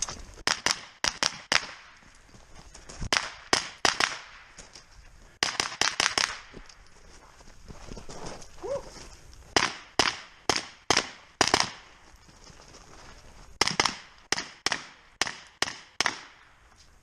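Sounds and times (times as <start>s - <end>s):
rifle shots: 3.1s - 4.5s, 9.6s - 11.8s, 13.6s - 16.4s.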